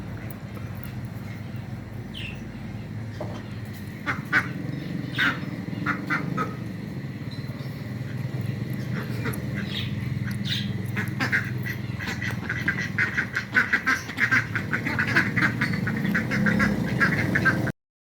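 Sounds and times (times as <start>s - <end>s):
steady low hum: 0.0s - 17.7s
ducks quacking: 3.2s - 6.7s, 8.7s - 17.7s.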